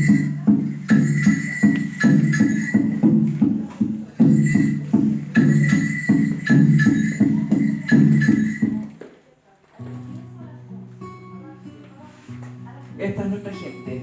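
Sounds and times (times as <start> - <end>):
music with sharp rhythmic strikes: 0.0 - 9.1.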